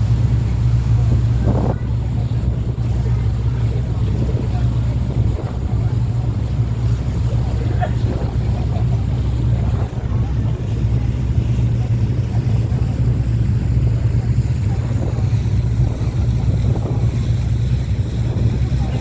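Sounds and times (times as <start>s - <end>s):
boat engine drone: 0.0s - 19.0s
wind and water rushing: 0.0s - 19.0s.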